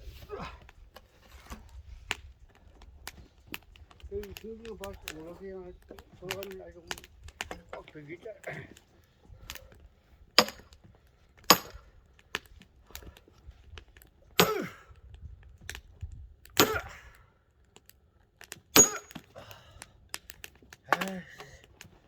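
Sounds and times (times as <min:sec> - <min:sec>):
wood knocking and cracking: 0:01.0 - 0:08.0.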